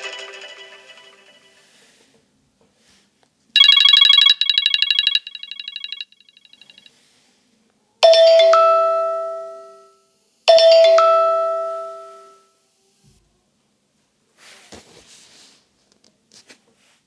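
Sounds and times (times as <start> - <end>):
two-note bell-like ringtone chime: 0.0 - 1.7, 3.6 - 6.0, 8.0 - 9.9, 10.5 - 12.4.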